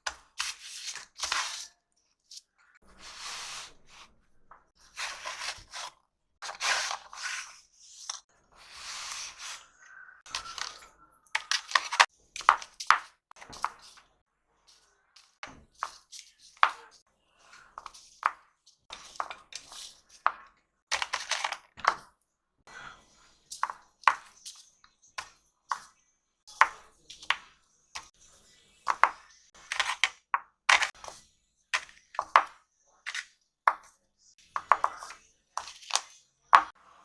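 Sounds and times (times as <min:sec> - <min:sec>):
pastel sticks clicking and tapping: 0:10.3 - 0:14.0, 0:17.8 - 0:22.1, 0:28.9 - 0:34.0, 0:34.6 - 0:36.8.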